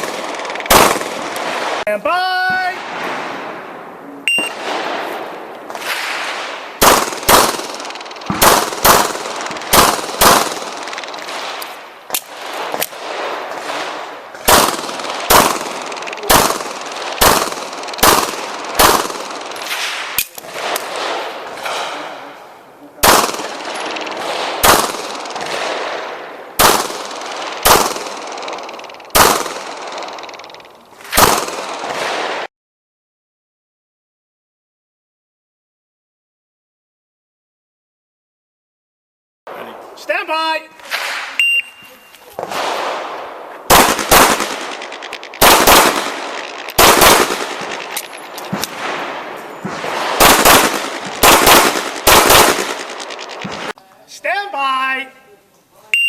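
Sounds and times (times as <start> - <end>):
pistol shots with echo: 0.0 - 1.8, 5.8 - 22.2, 23.0 - 32.5, 42.4 - 53.8.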